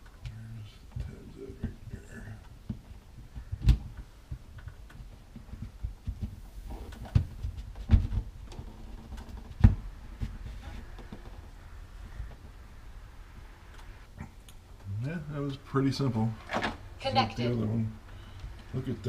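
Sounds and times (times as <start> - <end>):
dull knocks and thumps: 0.9 - 12.6.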